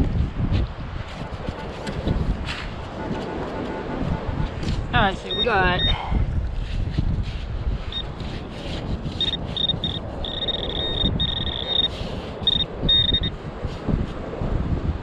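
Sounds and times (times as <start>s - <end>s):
wind rumbling on microphone: 0.0s - 15.0s
metal detector beeping: 3.0s - 6.0s, 7.9s - 8.1s, 9.2s - 13.4s.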